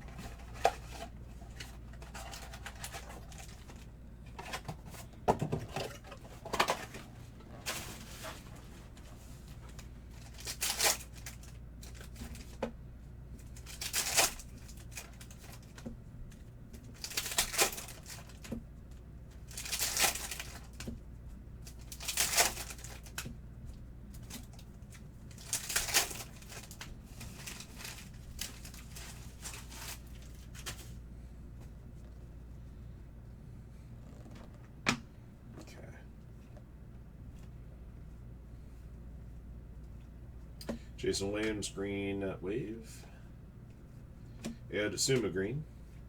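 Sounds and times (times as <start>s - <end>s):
card pack wrapper tearing and crinkling: 10.2s - 12.0s, 13.6s - 15.6s, 17.0s - 18.4s, 19.5s - 20.8s, 21.7s - 23.2s, 25.3s - 30.8s
quiet wrapper handling: 19.3s - 20.9s, 21.6s - 23.3s, 24.1s - 31.0s.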